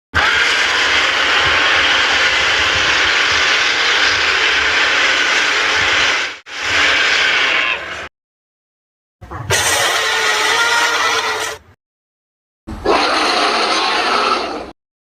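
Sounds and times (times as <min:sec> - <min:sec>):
loud rushing creature sound: 0:00.2 - 0:08.1.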